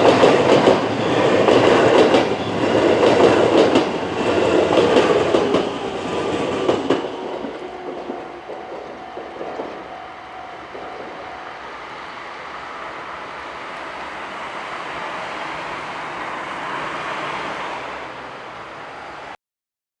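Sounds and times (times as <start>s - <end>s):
level crossing alarm ringing: 0.0s - 13.7s.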